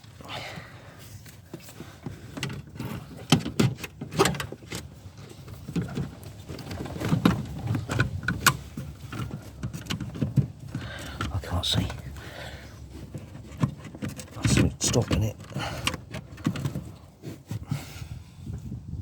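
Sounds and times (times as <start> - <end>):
rustling of wiring: 1.0 - 17.9
clicks and knocks of plastic parts: 1.3 - 17.6.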